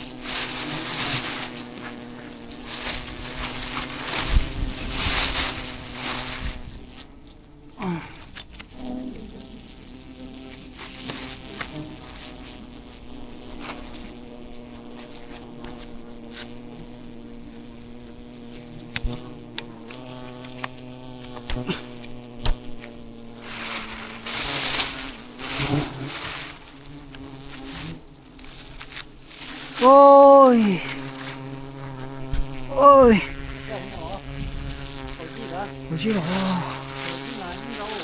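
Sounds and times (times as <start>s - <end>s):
loud rustling bursts: 0.0s - 7.1s, 22.4s - 38.0s
bees buzzing: 0.0s - 38.0s.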